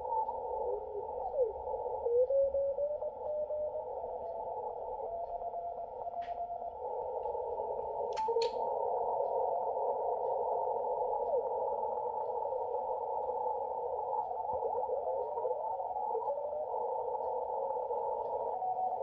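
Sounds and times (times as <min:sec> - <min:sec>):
radio band hiss: 0:00.0 - 0:19.0
sharp clicks: 0:08.1 - 0:08.7.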